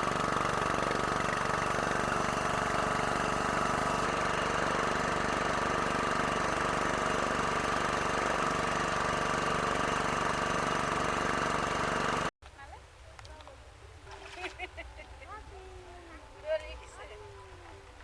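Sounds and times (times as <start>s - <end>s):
boat engine running: 0.0s - 12.3s.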